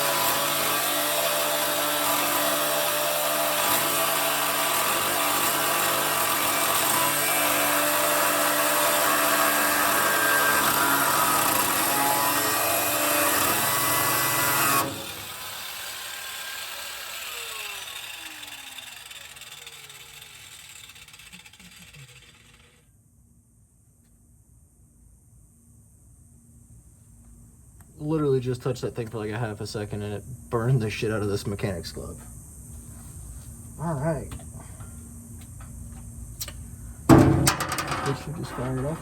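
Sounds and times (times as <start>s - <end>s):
angle grinder cutting metal: 0.0s - 22.8s, 37.2s - 39.0s
grinder wheel spinning down: 0.1s - 22.8s, 37.2s - 39.0s.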